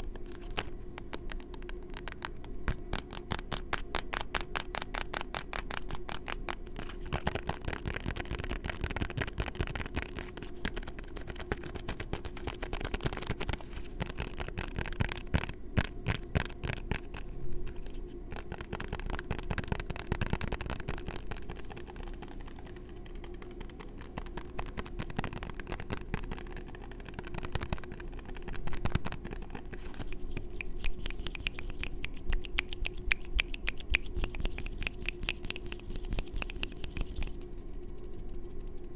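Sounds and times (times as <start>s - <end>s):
faint steady hum: 0.0s - 38.9s
scratchy rubbing: 2.9s - 38.9s
fingertip tapping on microphone: 18.3s - 37.4s.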